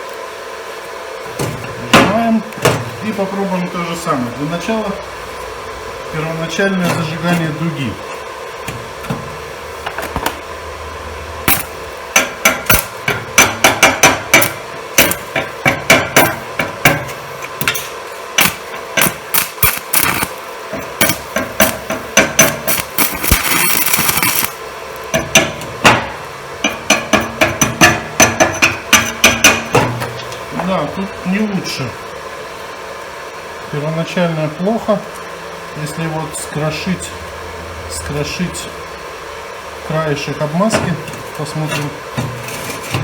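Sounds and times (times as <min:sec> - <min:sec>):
welding arc hissing: 0:00.0 - 0:43.0
electrode tapping on steel plate: 0:11.4 - 0:30.7, 0:40.7 - 0:43.0.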